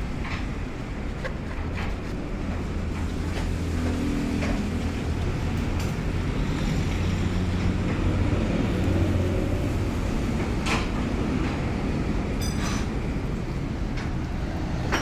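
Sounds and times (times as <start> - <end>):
low mechanical hum: 0.0 - 15.0.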